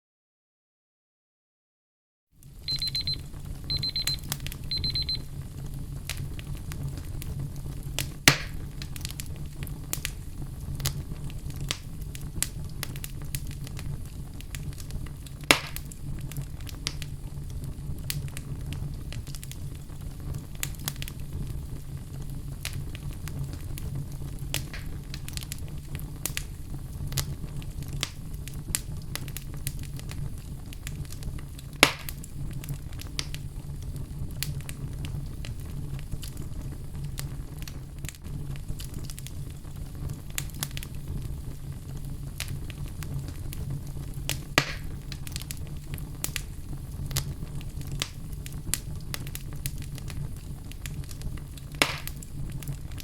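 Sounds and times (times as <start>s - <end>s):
fire crackling: 2.4s - 53.0s
timer alarm beeping: 2.7s - 5.2s.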